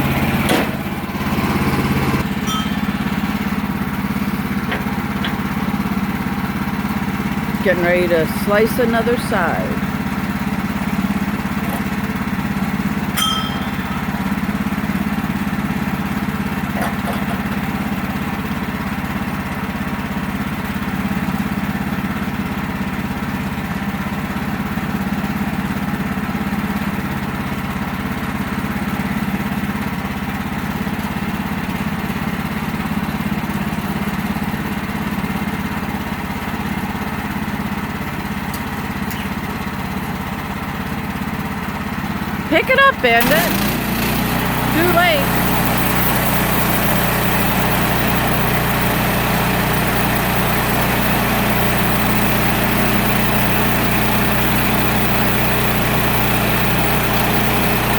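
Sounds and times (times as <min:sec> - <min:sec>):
sawmill engine under load: 0:00.0 - 0:57.9
metallic ding: 0:02.2 - 0:03.7, 0:13.1 - 0:14.5.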